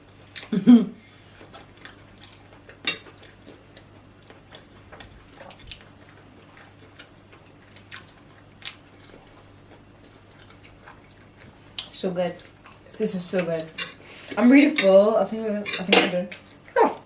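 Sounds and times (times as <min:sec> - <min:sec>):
soft eating sounds: 0:00.0 - 0:17.0.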